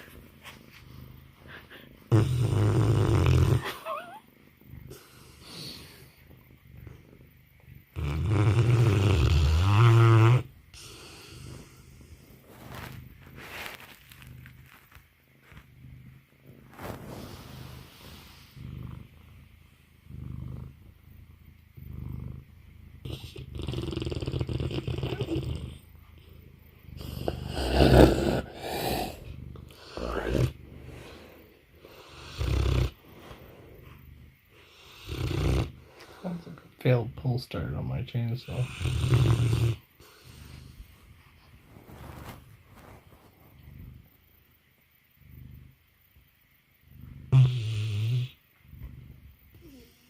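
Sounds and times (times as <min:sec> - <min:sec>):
dog snoring: 0:01.0 - 0:06.2, 0:07.9 - 0:15.6, 0:16.6 - 0:19.2, 0:20.0 - 0:21.0, 0:21.8 - 0:26.3, 0:27.0 - 0:36.4, 0:38.4 - 0:41.0, 0:46.9 - 0:50.0.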